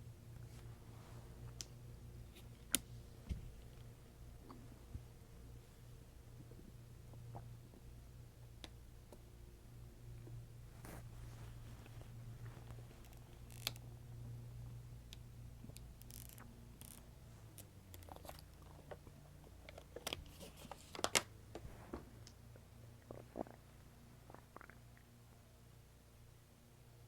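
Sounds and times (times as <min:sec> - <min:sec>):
stomach growling: 0:22.9 - 0:25.1.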